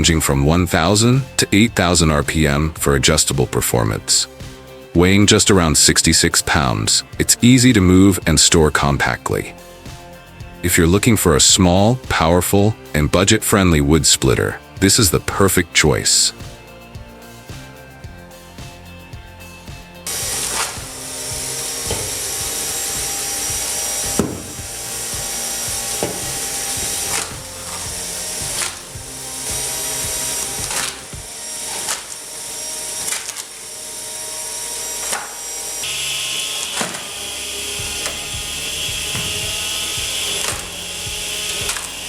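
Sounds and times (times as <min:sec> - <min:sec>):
motor whining: 0:19.8 - 0:42.0
wood creaking and splitting: 0:20.2 - 0:28.8.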